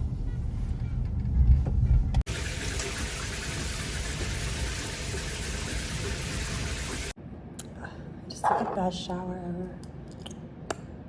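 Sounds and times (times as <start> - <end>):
shower water spraying: 2.3 - 7.2.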